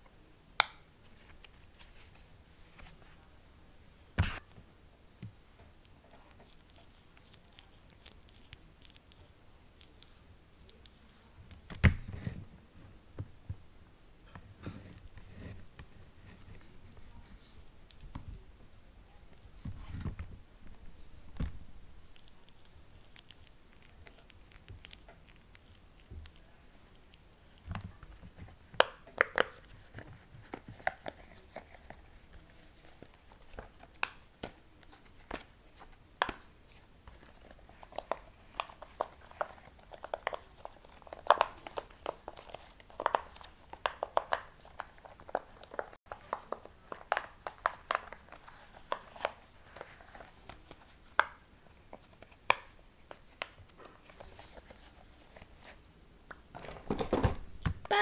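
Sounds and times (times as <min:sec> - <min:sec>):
fidget toys clicking and crinkling: 0:05.8 - 0:11.9, 0:22.0 - 0:55.8.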